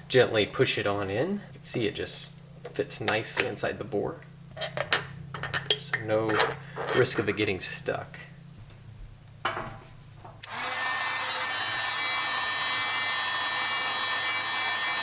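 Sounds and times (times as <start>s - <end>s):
heat gun blowing whine: 10.4s - 15.0s.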